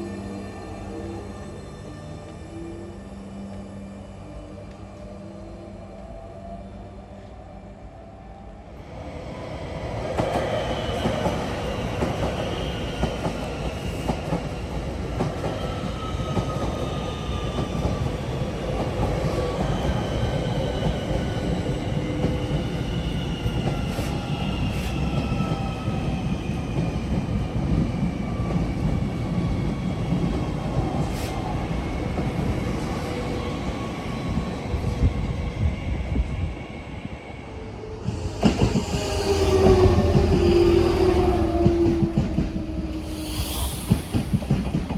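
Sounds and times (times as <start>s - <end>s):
train running: 8.8s - 44.9s.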